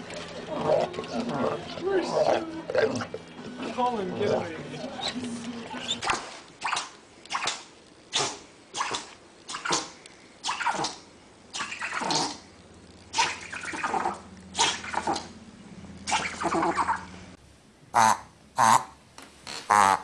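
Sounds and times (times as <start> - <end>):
animal rasping calls: 17.9 - 19.0.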